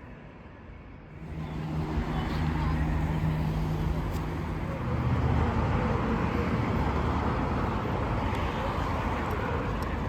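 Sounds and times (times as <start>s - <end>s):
road traffic rumble: 1.1s - 10.0s.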